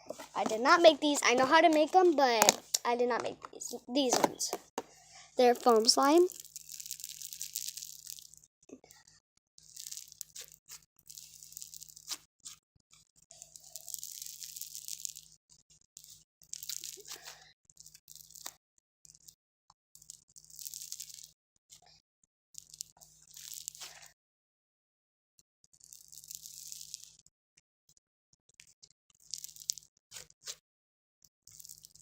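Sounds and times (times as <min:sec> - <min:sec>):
foam slime crackling: 0:00.0 - 0:08.4, 0:09.6 - 0:12.3, 0:13.4 - 0:15.4, 0:16.0 - 0:17.5, 0:20.5 - 0:21.3, 0:25.9 - 0:27.1.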